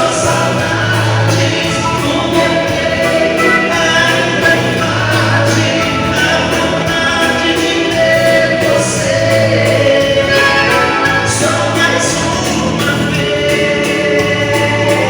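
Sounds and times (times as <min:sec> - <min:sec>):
live waltz music with singing: 0:00.0 - 0:15.0.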